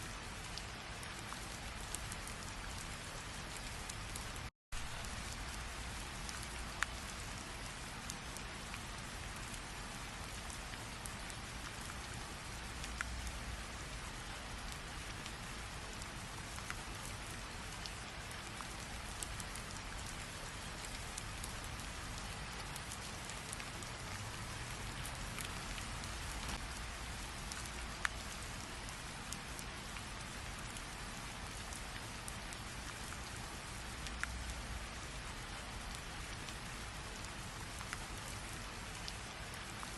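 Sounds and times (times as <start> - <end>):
steady rain: 0.0 - 39.9
single raindrop tick: 25.4 - 26.8.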